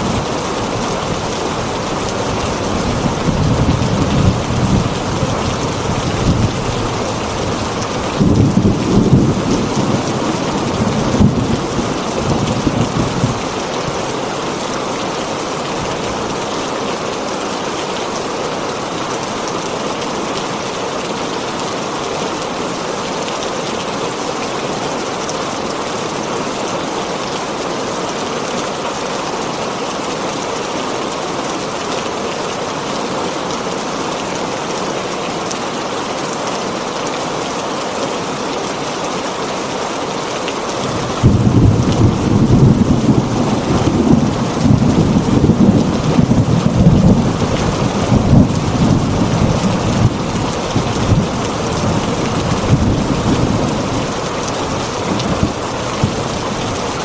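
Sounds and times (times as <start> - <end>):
heavy rain on a tin roof: 0.0 - 57.0
low thunder rumble: 2.2 - 13.4, 40.9 - 53.9.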